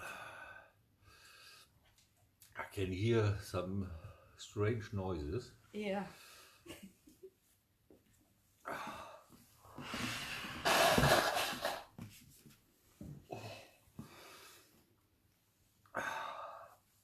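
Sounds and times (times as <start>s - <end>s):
man breathing hard: 8.7s - 11.9s, 15.9s - 16.8s.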